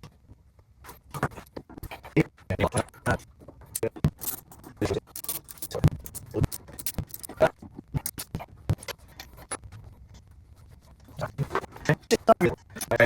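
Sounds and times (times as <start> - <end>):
metal parts clicking and tapping: 3.6 - 9.7.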